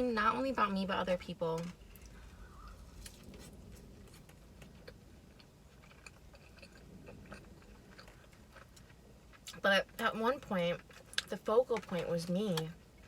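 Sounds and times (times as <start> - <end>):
person chewing with mouth smacks: 4.1 - 9.6.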